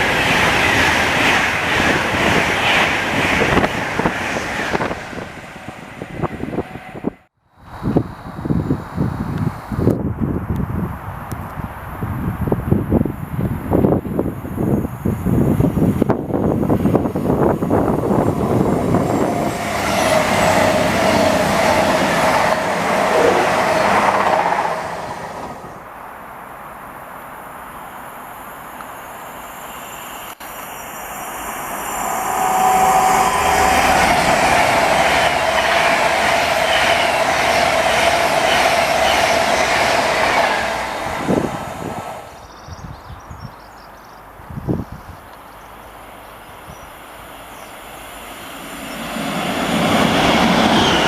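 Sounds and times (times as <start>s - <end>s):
train passing on rails: 0.0s - 42.6s, 45.7s - 51.0s
steady whine: 17.0s - 25.8s, 30.2s - 42.4s.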